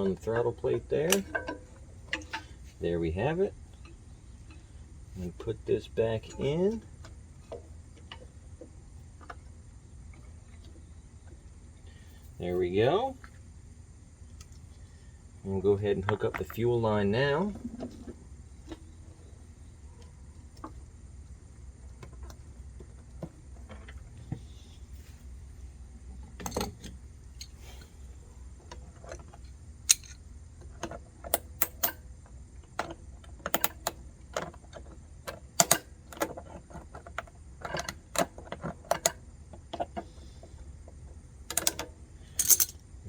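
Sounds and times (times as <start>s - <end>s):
low steady hum: 0.0s - 43.0s
small parts clicking and tapping: 28.6s - 42.8s.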